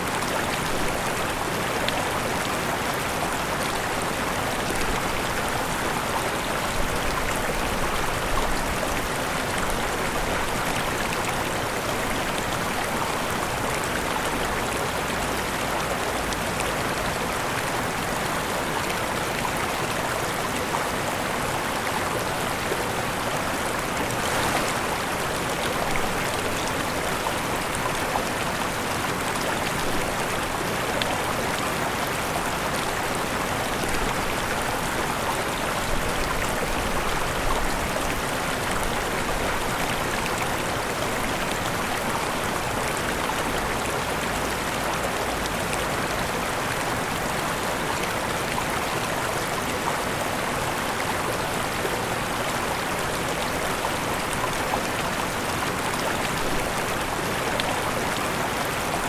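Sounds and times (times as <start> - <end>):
falling water rushing and splashing: 0.0 - 59.0.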